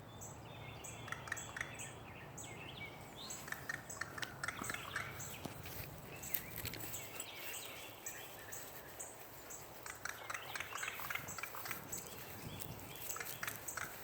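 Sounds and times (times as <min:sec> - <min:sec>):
crow rattling calls: 0:09.8 - 0:12.1, 0:13.0 - 0:14.0.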